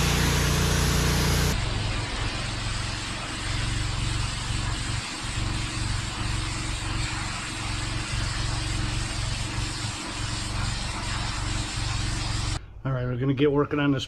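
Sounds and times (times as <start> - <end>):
high-pressure spray hiss: 0.0 - 12.6
pressure washer engine drone: 0.0 - 12.6.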